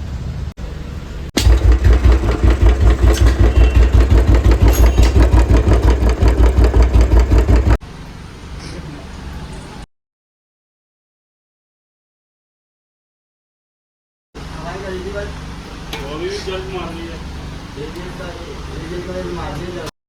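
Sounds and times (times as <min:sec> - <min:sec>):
motorcycle engine thumping: 0:01.4 - 0:07.8.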